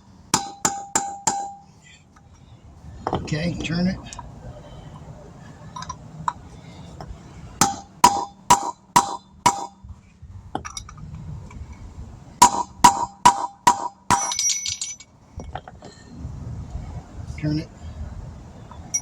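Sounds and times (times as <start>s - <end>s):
hammer striking metal: 0.4s - 1.6s, 12.4s - 15.0s.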